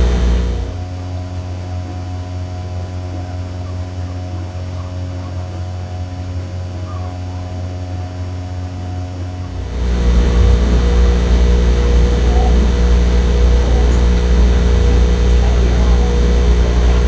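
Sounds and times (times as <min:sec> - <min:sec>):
steady machine hum: 0:00.0 - 0:17.0.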